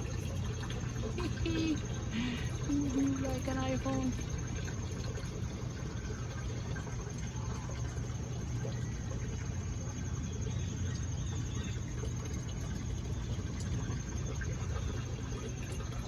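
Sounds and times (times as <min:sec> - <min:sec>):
constant low hum: 0:00.0 - 0:16.0.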